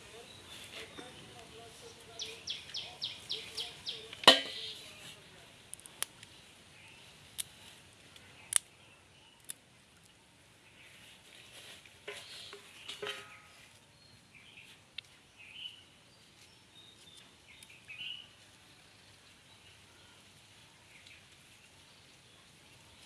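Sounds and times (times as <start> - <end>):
birds chirping: 0.0 - 5.1, 10.7 - 18.3.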